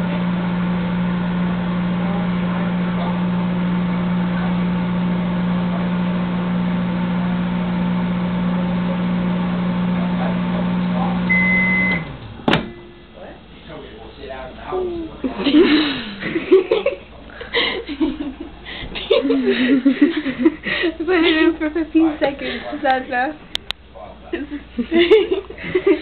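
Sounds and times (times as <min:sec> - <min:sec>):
microwave oven humming: 0:00.0 - 0:26.0
microwave timer beep: 0:06.5 - 0:13.2.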